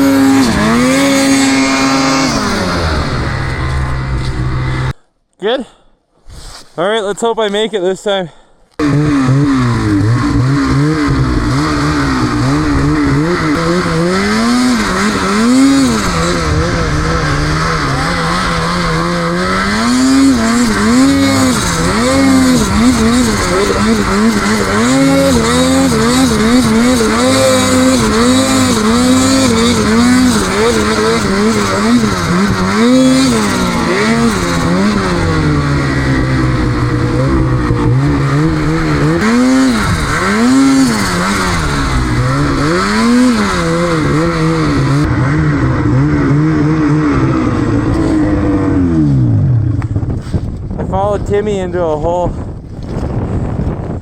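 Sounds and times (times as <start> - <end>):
snowmobile engine revving: 0.0 - 5.0, 8.8 - 50.4.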